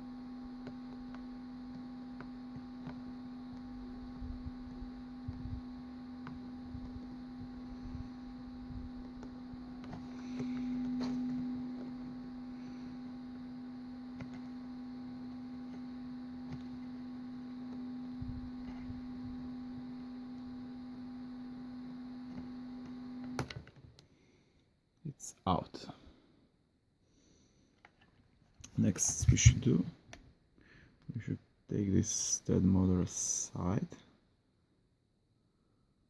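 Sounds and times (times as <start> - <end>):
soldering gun humming: 0.0 - 24.0, 28.6 - 29.9.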